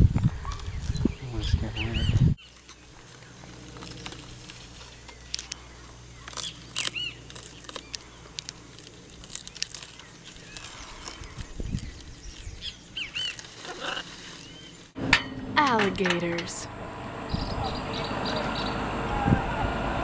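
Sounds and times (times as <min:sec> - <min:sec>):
birds chirping: 0:00.2 - 0:19.3
sharp clicks and rustles: 0:02.4 - 0:12.6.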